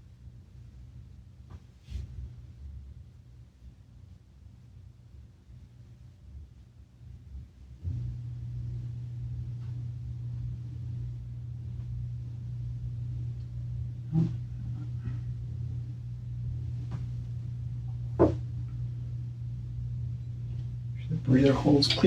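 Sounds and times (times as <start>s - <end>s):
steady low hum: 0.0s - 22.0s
knocks on workbench: 18.2s - 18.4s.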